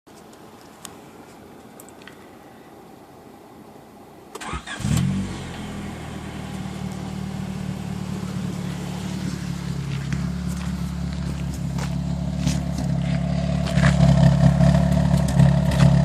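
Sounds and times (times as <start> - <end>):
car engine cranking and starting: 4.3 - 16.0
car engine idling bassy exhaust: 5.1 - 16.0.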